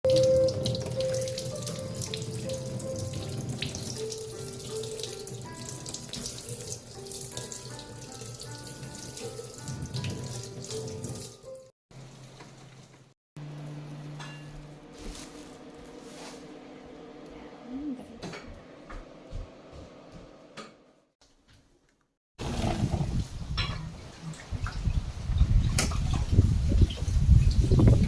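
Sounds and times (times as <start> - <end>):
soft slow background music: 0.1 - 11.7.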